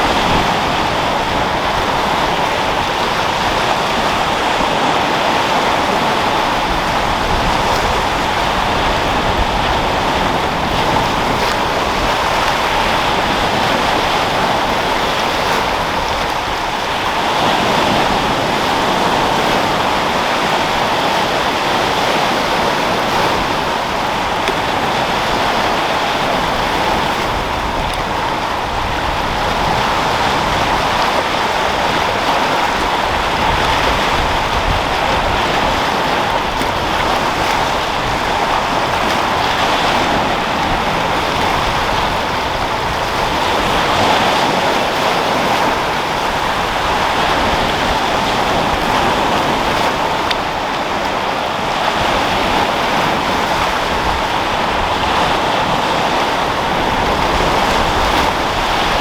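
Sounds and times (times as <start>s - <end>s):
sea waves breaking: 0.0s - 59.0s
wind blowing: 0.0s - 59.0s.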